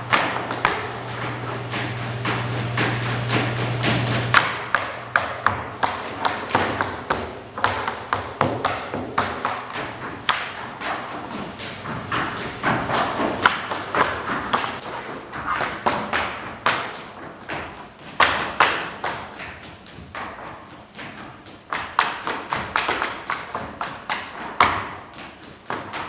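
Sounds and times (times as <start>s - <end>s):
tap shoes on stage floor: 0.0s - 26.0s.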